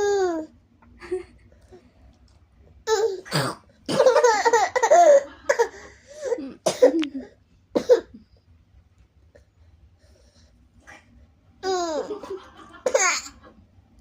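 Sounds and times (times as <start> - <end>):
baby coughing: 2.9 - 8.2, 12.9 - 13.3
baby laughing: 3.9 - 6.3, 11.6 - 13.4.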